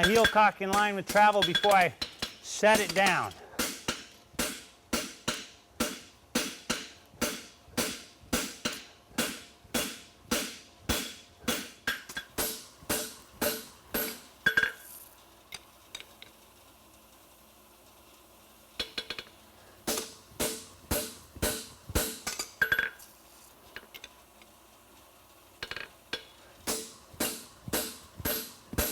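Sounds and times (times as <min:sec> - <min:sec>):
hammer striking metal on anvil: 0:00.0 - 0:14.8, 0:19.9 - 0:23.0, 0:25.6 - 0:28.9.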